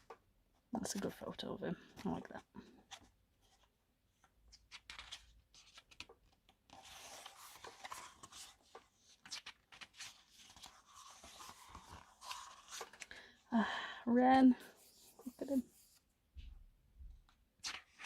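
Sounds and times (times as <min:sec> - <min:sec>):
pages turning: 0:02.9 - 0:13.2, 0:17.6 - 0:18.0
paper sliding and rubbing: 0:06.7 - 0:13.0.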